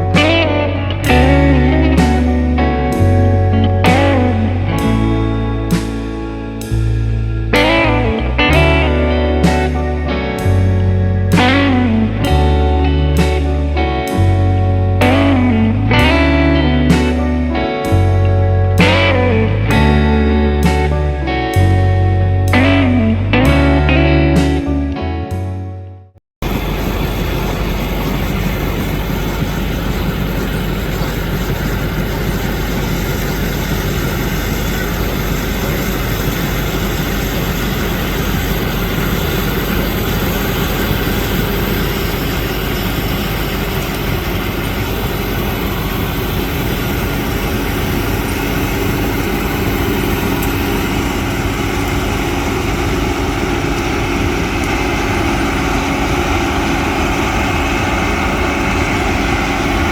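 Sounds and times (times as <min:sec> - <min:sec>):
combine harvester engine drone: 0:00.0 - 0:25.1, 0:26.4 - 0:59.9
steady hum: 0:26.4 - 0:59.9.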